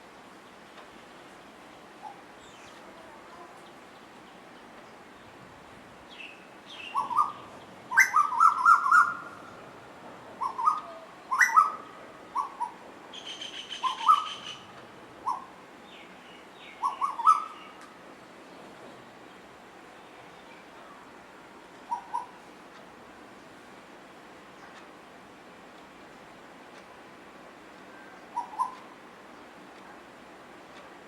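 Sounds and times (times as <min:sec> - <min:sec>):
koels calling: 0:10.4 - 0:12.8, 0:21.9 - 0:22.4, 0:28.4 - 0:28.9.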